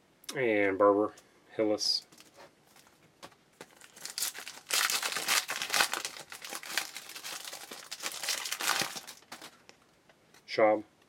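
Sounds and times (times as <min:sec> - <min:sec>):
wrapper tearing and crinkling: 0:03.6 - 0:09.6.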